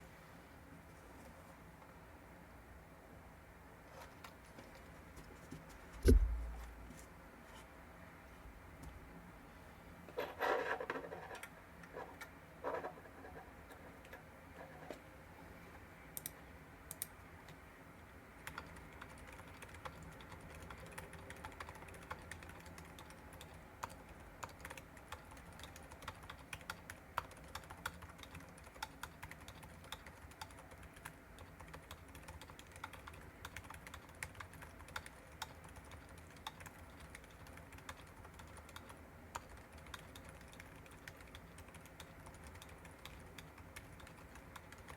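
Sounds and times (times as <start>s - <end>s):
soft mechanical keyboard typing: 16.2s - 17.6s, 18.4s - 44.9s.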